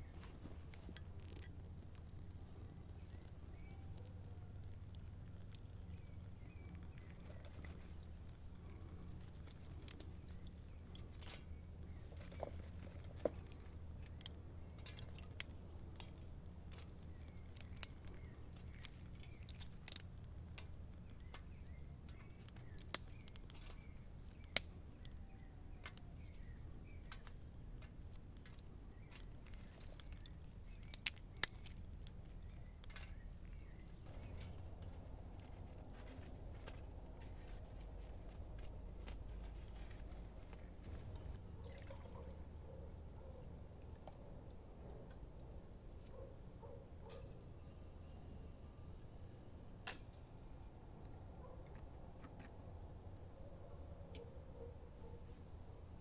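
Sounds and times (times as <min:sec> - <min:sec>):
faint bird chirps: 0:02.3 - 0:13.6, 0:20.9 - 0:34.9
steady low rumble: 0:23.9 - 0:46.8.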